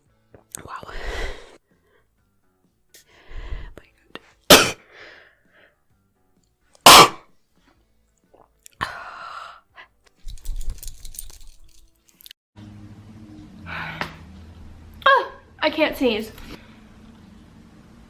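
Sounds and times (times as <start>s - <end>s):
woman sneezing: 6.8s - 7.2s.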